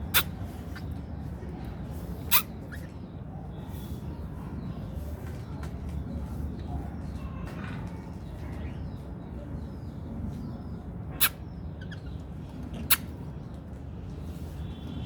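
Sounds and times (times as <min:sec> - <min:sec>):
lovebird chirping: 0:02.3 - 0:02.8.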